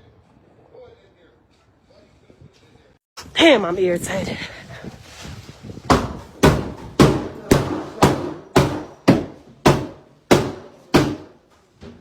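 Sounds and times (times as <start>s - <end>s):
hammer blows ringing: 6.4s - 11.4s.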